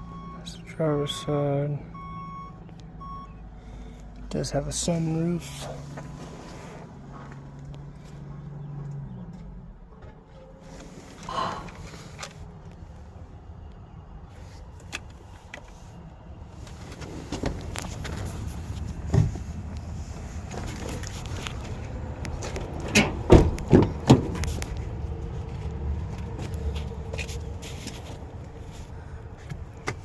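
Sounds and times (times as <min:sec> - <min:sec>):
low steady rumble: 0:00.0 - 0:29.8
car body clunks and knocks: 0:19.0 - 0:19.4, 0:22.4 - 0:24.6.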